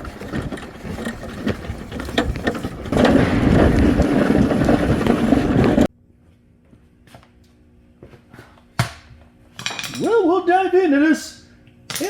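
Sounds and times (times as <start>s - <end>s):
push mower rattling and scraping: 0.0s - 5.9s.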